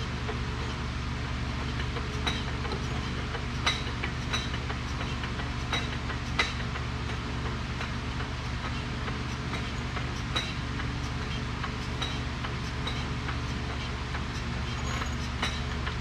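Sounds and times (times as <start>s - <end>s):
low machine hum: 0.0s - 16.0s
light metallic clinks: 14.7s - 15.8s.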